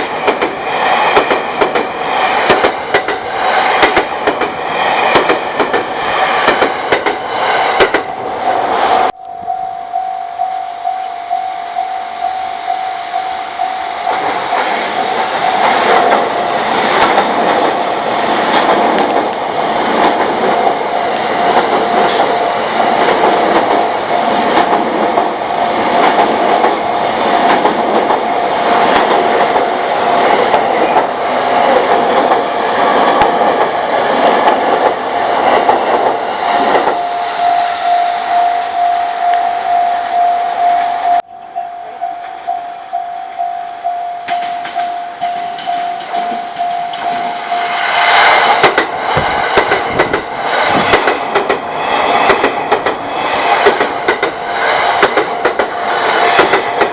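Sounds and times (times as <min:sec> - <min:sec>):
train wheels clattering over rails: 0:00.0 - 0:08.2, 0:14.1 - 0:37.0, 0:44.3 - 0:56.9
level crossing warning bell: 0:09.1 - 0:16.7, 0:36.6 - 0:47.9.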